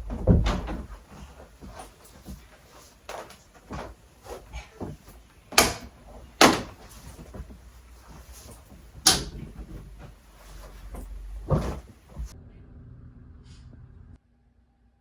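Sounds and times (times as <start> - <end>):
sharp knocks: 4.8 - 6.9.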